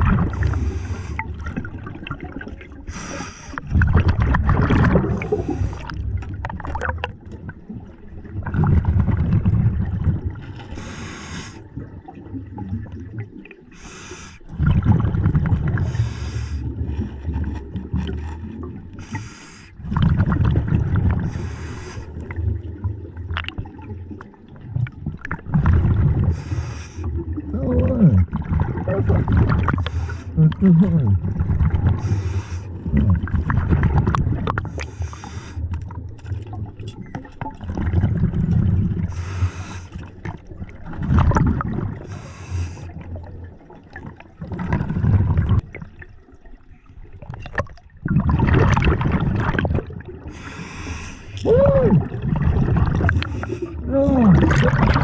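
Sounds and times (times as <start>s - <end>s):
gurgle of exhaled bubbles: 0.0s - 55.0s
regulator inhale hiss: 2.9s - 3.6s, 10.7s - 11.6s, 13.8s - 14.5s, 15.9s - 16.6s, 19.0s - 19.8s, 21.3s - 22.2s, 26.4s - 27.1s, 32.0s - 32.8s, 34.8s - 35.7s, 39.1s - 40.0s, 42.1s - 42.9s, 50.3s - 51.4s.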